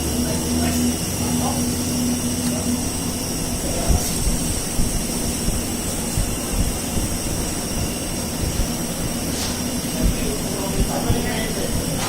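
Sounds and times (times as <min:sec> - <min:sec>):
high hiss: 0:00.0 - 0:12.0
mechanical rumble and hum: 0:00.0 - 0:12.0.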